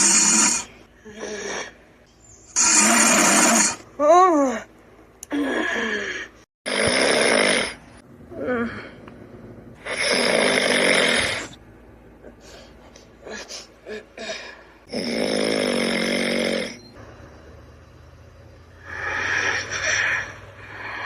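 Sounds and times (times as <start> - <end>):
dragon snoring loudly: 2.6 - 3.8, 6.7 - 7.8, 9.8 - 11.6, 14.9 - 16.8.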